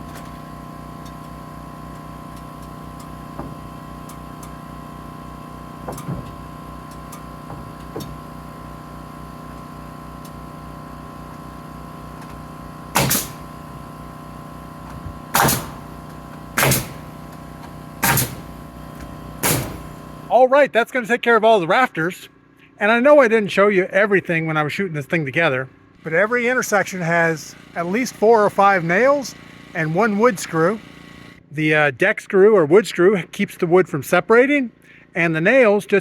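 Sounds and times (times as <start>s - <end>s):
machine hum: 0.0s - 20.4s, 25.7s - 31.5s
nail gun firing: 5.8s - 8.3s, 12.2s - 13.8s, 14.9s - 20.0s.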